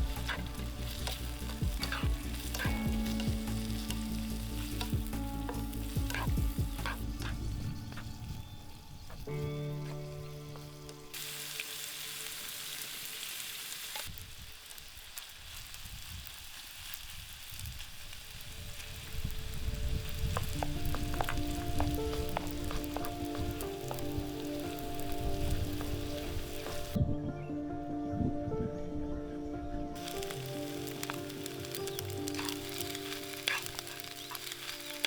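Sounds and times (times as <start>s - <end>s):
instrumental music: 0.0s - 11.6s, 20.4s - 35.0s
food sizzling in a pan: 0.0s - 27.0s, 30.0s - 35.0s
stirring clicks: 0.1s - 7.4s, 30.0s - 35.0s.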